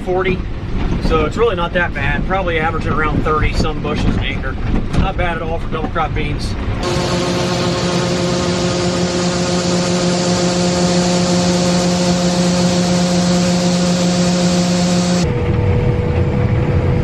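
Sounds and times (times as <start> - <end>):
rough low engine: 6.6 - 17.0
harvest machinery engine whining: 6.8 - 16.7.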